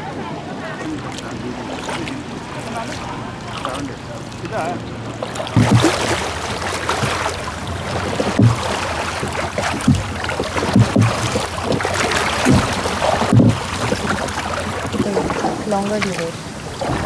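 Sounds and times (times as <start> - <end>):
water splashing around boat: 0.0 - 17.0
low knocks: 5.5 - 17.0.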